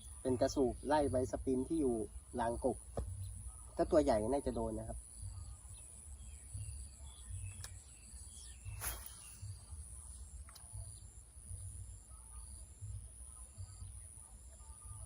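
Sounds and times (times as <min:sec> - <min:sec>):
high-pitched insect drone: 0:08.4 - 0:14.0.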